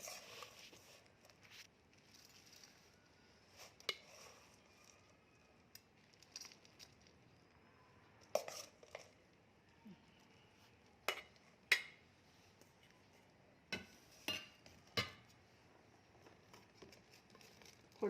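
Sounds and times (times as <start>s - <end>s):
spoon scraping a bowl: 0.0s - 1.6s, 2.2s - 5.1s, 8.2s - 9.2s.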